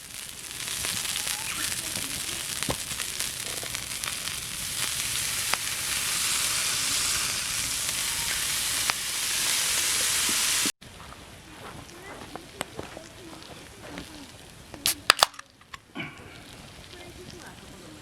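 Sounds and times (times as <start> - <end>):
meat sizzling over a campfire: 0.0 - 15.3, 16.0 - 18.0
sharp fat pops: 14.8 - 15.5.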